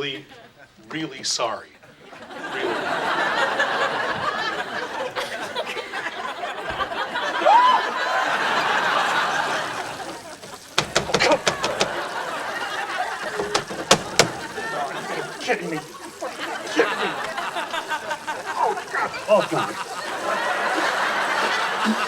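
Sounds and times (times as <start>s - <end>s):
studio audience laughing: 1.8s - 22.0s
sharp knocks: 10.8s - 12.1s, 13.2s - 14.6s.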